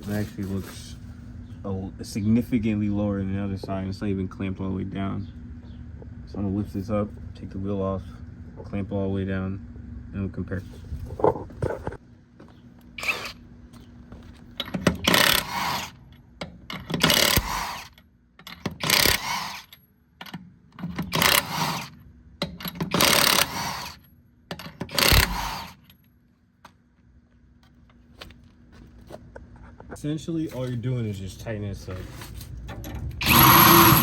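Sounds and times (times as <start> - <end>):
jack pumping rasps: 14.6 - 16.1, 16.7 - 19.8, 20.8 - 24.0, 24.8 - 25.9, 33.0 - 34.0.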